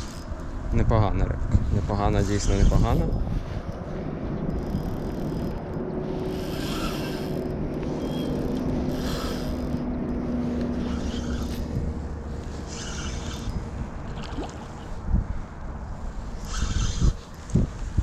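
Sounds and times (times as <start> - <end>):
wind buffeting microphone: 0.6 - 8.0, 8.6 - 18.0.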